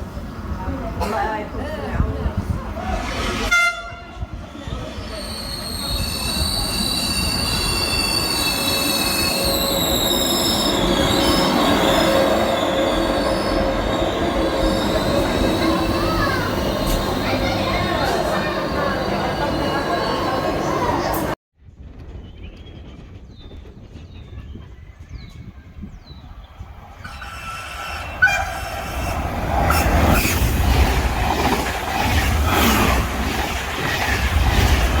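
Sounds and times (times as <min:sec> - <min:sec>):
train wheels squealing: 0:04.5 - 0:21.4, 0:27.0 - 0:30.5
wheels rumbling on track: 0:07.5 - 0:21.4, 0:26.8 - 0:35.0.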